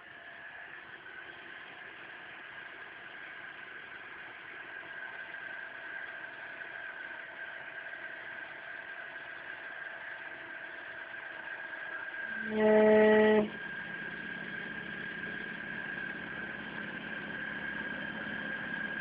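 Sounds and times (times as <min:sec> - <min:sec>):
car engine idling: 0:00.0 - 0:19.0
high whine: 0:12.3 - 0:19.0.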